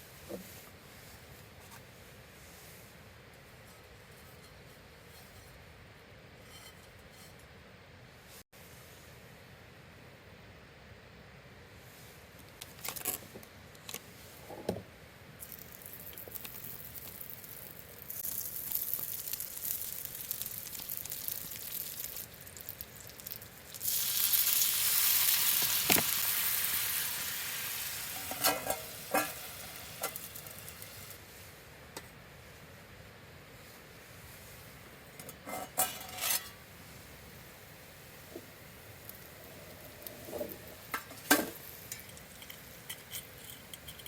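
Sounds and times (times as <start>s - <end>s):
food sizzling on griddle: 15.4s - 31.2s, 35.6s - 44.0s.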